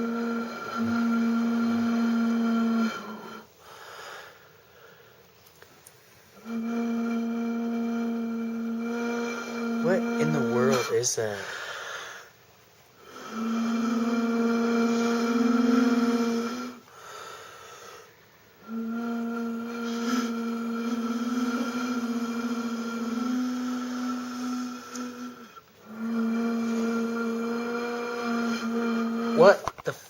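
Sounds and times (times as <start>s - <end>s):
horn-like droning tone: 0.0s - 3.5s, 6.4s - 11.3s, 13.0s - 16.9s, 18.6s - 29.6s.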